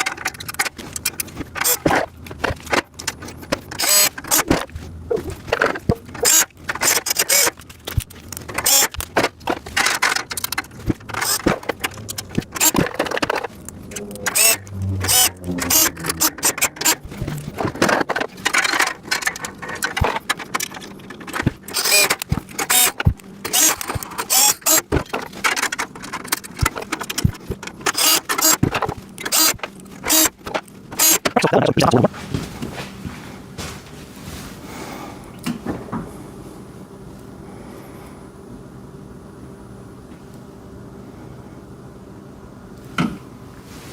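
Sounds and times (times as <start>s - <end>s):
metal parts clanking and rattling: 0.0s - 31.3s.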